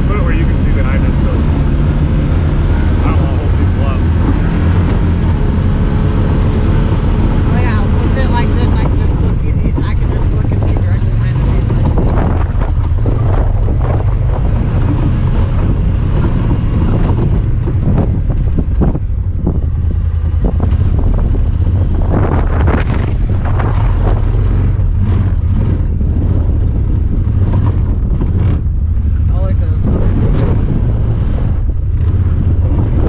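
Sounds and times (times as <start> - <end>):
vehicle engine running: 0.0 - 33.0
wind buffeting microphone: 0.0 - 33.0.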